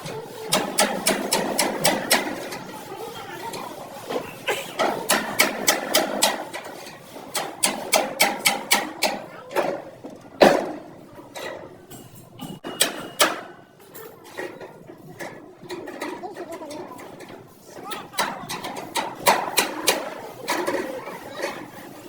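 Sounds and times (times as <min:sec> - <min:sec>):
hammer on sheet metal: 0:00.5 - 0:02.6, 0:04.8 - 0:09.4, 0:11.9 - 0:13.7, 0:18.1 - 0:20.9.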